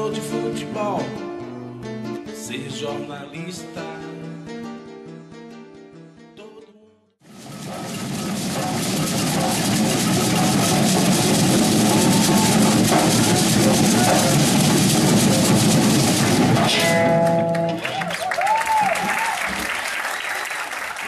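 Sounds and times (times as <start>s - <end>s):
people cheering: 10.4s - 15.7s, 17.3s - 21.0s.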